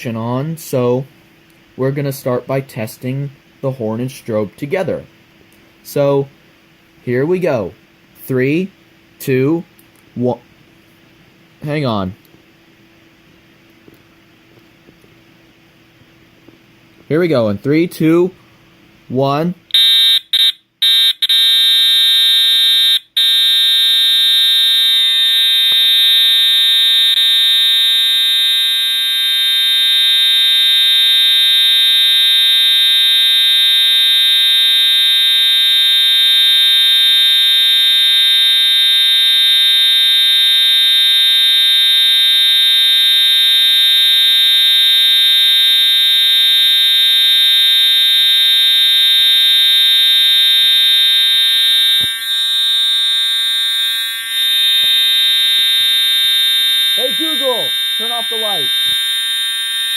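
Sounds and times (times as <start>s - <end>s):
fire alarm horn buzzing: 19.7s - 59.9s.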